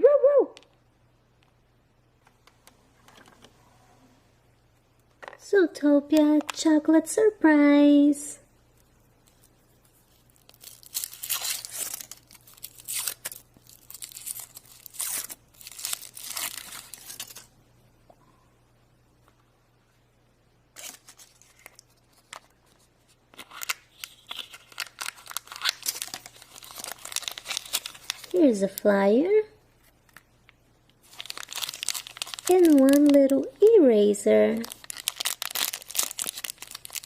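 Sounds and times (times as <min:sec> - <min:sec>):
wrapper tearing and crinkling: 0:09.3 - 0:17.5, 0:20.8 - 0:22.5, 0:23.3 - 0:28.8, 0:31.0 - 0:33.5, 0:34.5 - 0:37.0.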